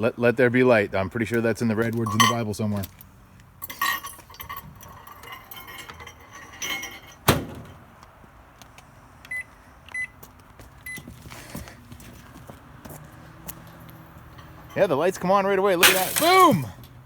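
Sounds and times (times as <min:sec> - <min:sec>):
glass light bulbs clinking: 0:02.0 - 0:02.5, 0:03.6 - 0:07.3, 0:14.2 - 0:15.2, 0:15.8 - 0:16.6.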